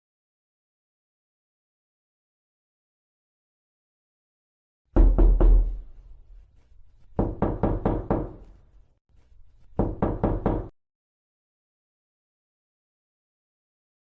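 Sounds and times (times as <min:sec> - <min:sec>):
knocking on a door: 0:05.0 - 0:05.9, 0:07.2 - 0:08.4, 0:09.8 - 0:10.8.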